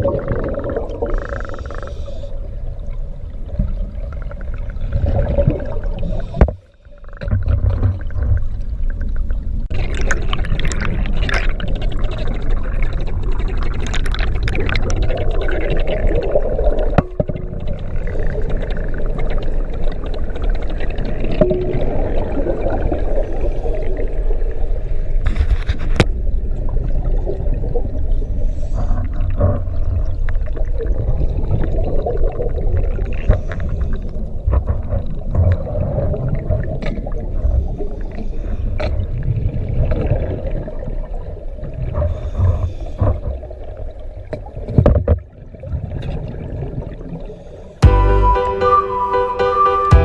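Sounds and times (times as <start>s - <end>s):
gurgling bubbles: 0.0s - 25.2s, 26.2s - 44.7s
underwater churning rumble: 0.0s - 25.2s.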